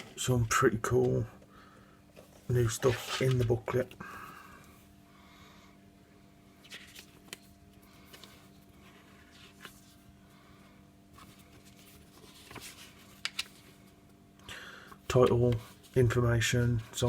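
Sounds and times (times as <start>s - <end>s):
faint steady hum: 0.0s - 17.0s
paper pages rustling: 2.2s - 3.7s, 6.6s - 10.1s, 11.2s - 13.9s.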